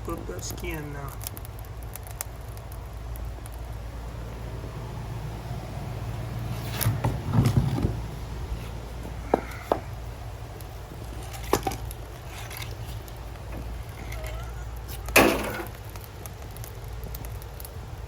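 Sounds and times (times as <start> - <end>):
firewood logs knocking together: 9.0 - 10.0, 11.0 - 16.1.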